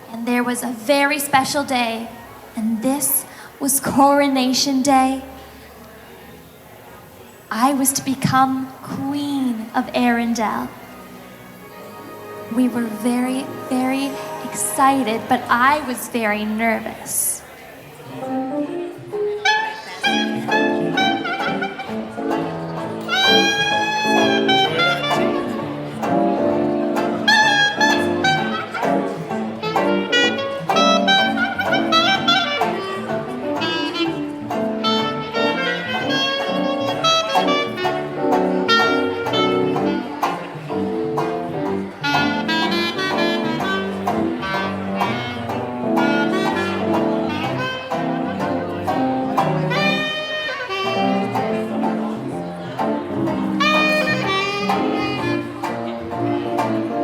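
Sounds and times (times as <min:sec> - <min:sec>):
jazz band playing: 0:00.0 - 0:57.0
saxophone melody: 0:09.7 - 0:15.9, 0:18.1 - 0:57.0.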